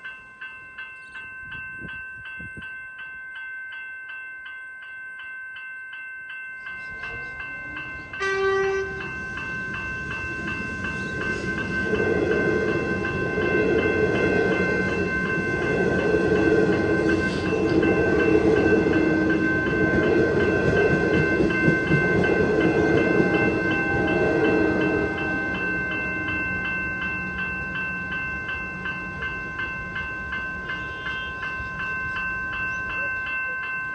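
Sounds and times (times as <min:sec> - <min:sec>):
level crossing bell dinging: 0:00.0 - 0:33.9
train wheels and motors rumbling: 0:06.8 - 0:33.0
train horn blast: 0:08.2 - 0:09.1, 0:23.4 - 0:25.8.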